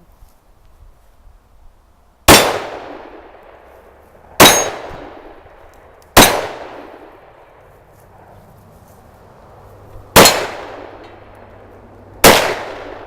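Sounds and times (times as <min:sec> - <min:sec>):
pistol shots with echo: 0:02.3 - 0:03.6, 0:04.4 - 0:05.4, 0:06.1 - 0:07.4, 0:10.1 - 0:11.3, 0:12.2 - 0:13.0.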